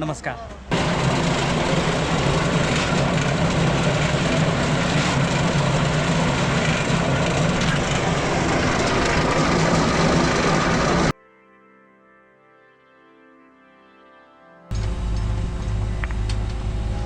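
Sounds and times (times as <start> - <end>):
road or wind noise: 0.5 - 11.1, 14.7 - 17.0
vehicle engine hum: 0.5 - 11.1, 14.7 - 17.0.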